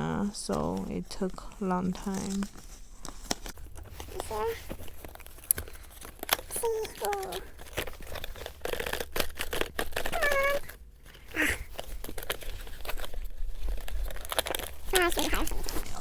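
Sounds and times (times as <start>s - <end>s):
packaging crinkling and tearing: 1.8s - 16.0s
pitched squeak: 10.1s - 10.7s.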